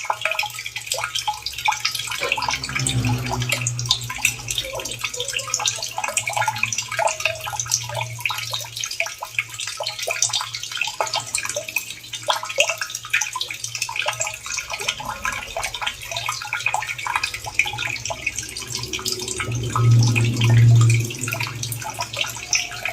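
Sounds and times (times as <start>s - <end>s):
water dripping: 0.0s - 22.9s
water trickling and splashing: 0.0s - 22.9s
steady low hum: 1.9s - 8.7s, 14.8s - 22.9s.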